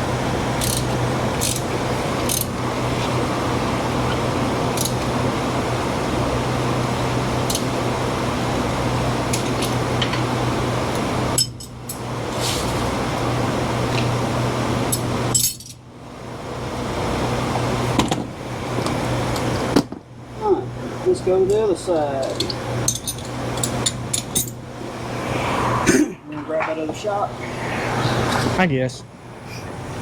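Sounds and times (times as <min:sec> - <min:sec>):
machine hum and rush: 0:00.0 - 0:15.2, 0:23.0 - 0:30.0.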